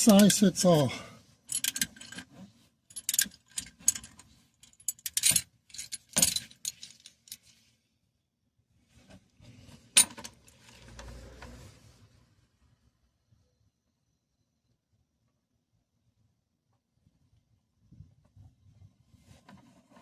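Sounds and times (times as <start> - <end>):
metal wrench clinks and clicks: 1.5 - 2.3, 2.9 - 7.4.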